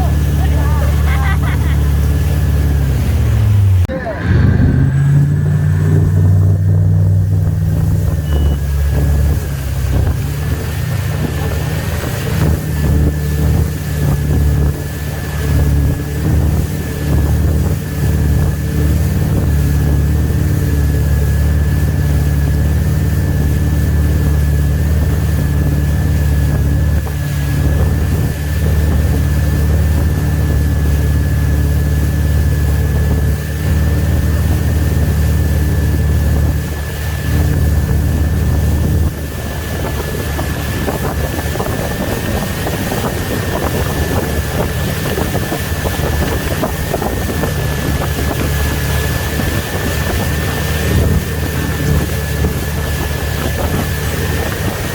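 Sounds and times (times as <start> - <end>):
boat engine humming: 0.0 - 54.9
wind and water rushing: 0.0 - 54.9
thin high whine: 3.9 - 9.1.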